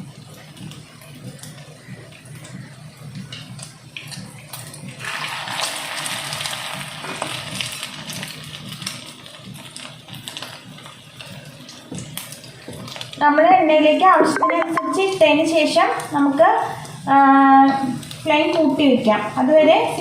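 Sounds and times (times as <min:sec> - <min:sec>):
cutlets sizzling in hot oil: 0:03.2 - 0:13.9.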